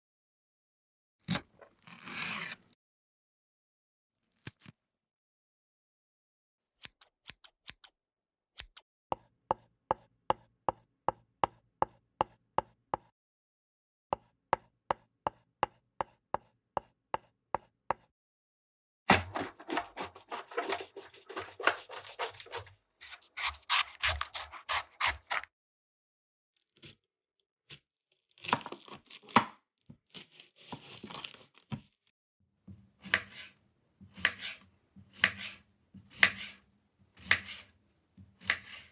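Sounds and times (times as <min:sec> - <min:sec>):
knife chopping on cutting board: 0:08.6 - 0:13.1, 0:19.1 - 0:25.5, 0:32.7 - 0:36.6, 0:37.2 - 0:38.9.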